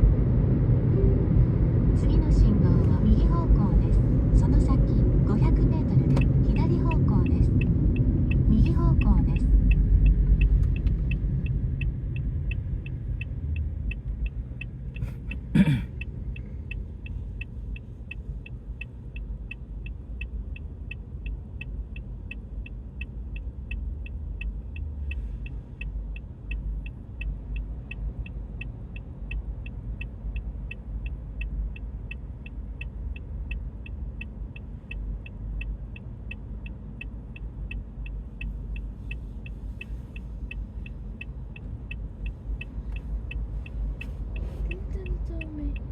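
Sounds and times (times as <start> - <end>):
car engine rumble from inside: 0.0 - 45.9
short high beeps: 1.0 - 1.4.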